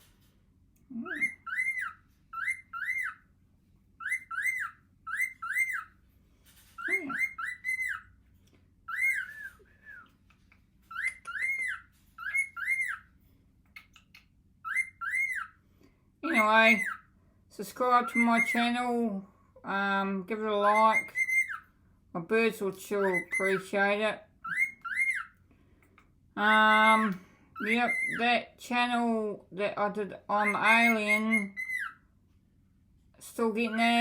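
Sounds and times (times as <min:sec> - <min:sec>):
cockatiel chirping: 0:01.0 - 0:03.3, 0:04.0 - 0:06.0, 0:06.7 - 0:08.2, 0:08.8 - 0:15.6, 0:16.3 - 0:17.1, 0:18.0 - 0:18.7, 0:20.6 - 0:21.7, 0:23.0 - 0:23.7, 0:24.4 - 0:25.4, 0:27.6 - 0:28.2, 0:30.3 - 0:32.0.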